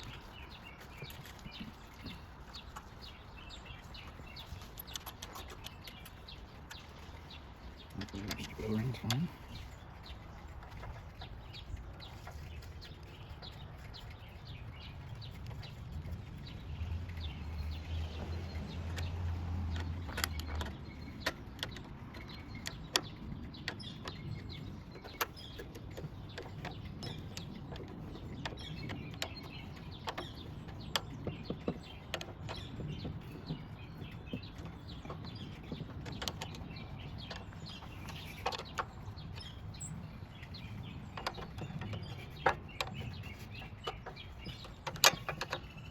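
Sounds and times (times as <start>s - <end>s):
clicks and taps of tools: 41.2s - 45.8s.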